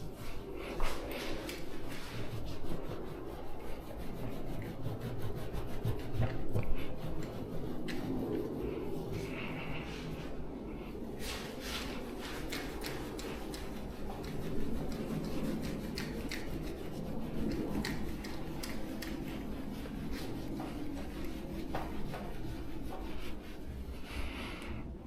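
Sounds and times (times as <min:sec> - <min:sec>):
scraper rubbing on car paint: 0:00.0 - 0:24.0.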